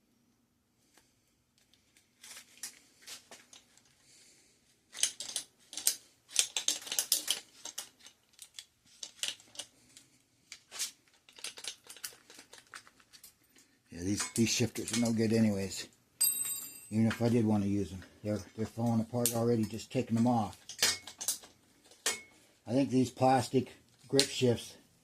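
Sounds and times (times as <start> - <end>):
plastic clicks and cracks: 4.9 - 9.7, 20.5 - 22.2.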